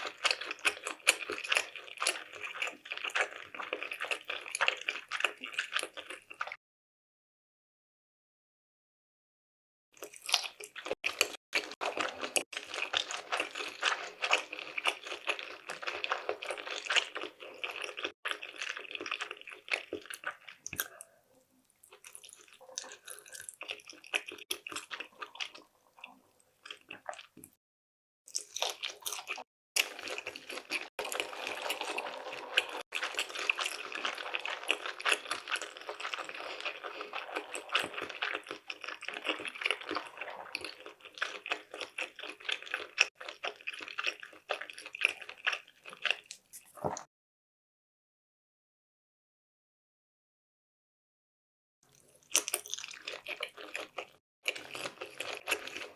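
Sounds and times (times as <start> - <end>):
wet chewing mouth clicks: 10.0 - 27.6, 51.9 - 55.9.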